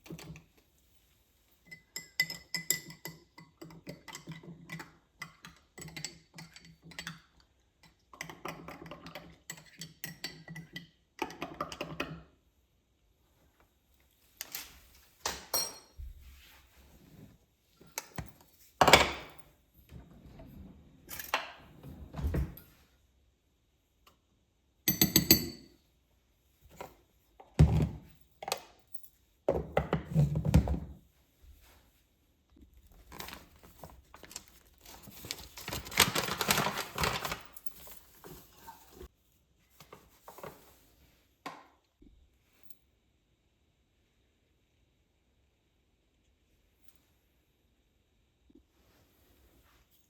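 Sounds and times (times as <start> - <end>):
kitchen knocks and thunks: 27.6 - 28.1, 29.5 - 31.0
rustling or scraping: 33.0 - 39.2.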